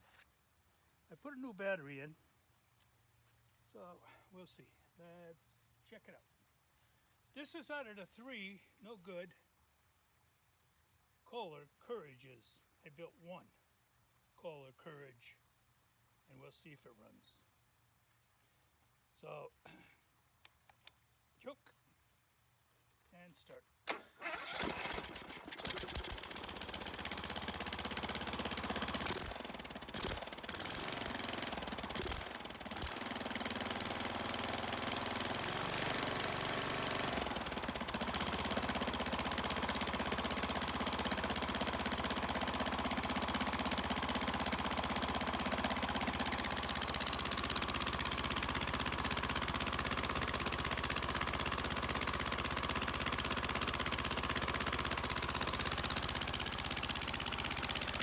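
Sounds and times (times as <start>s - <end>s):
engine starting and running unevenly: 23.9s - 58.0s.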